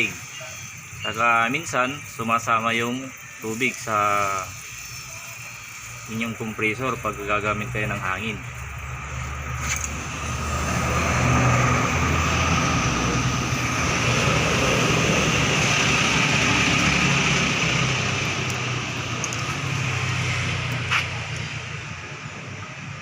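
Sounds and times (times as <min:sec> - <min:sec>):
air and water hissing from drain: 0:00.0 - 0:22.8.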